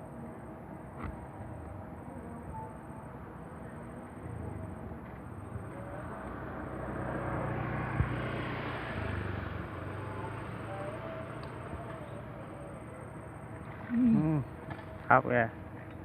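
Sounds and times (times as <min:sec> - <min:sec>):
vehicle passing by: 0:05.4 - 0:12.7.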